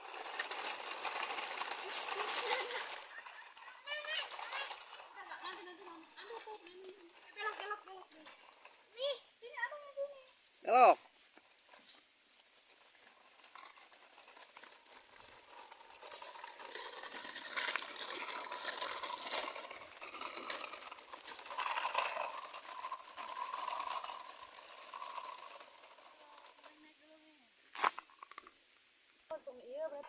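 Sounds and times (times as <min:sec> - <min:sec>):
plastic toy trucks clattering: 0:00.0 - 0:08.9, 0:12.7 - 0:26.8.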